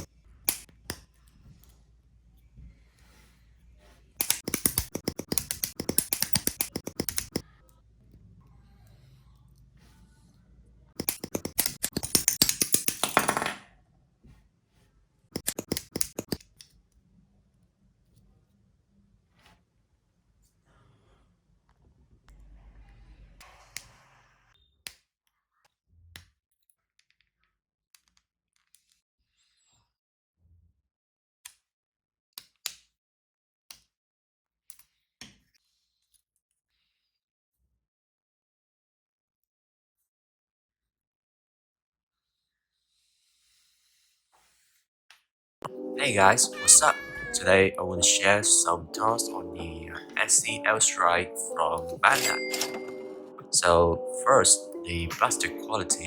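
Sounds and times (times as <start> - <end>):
plastic parts clicking together: 4.2 - 7.4, 11.0 - 13.4.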